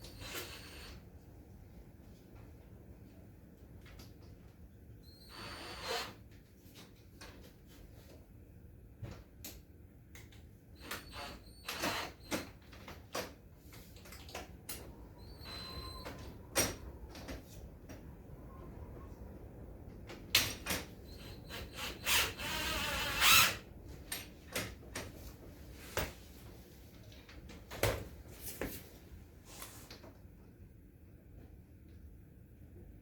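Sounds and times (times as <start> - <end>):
power drill running: 21.2 - 23.6.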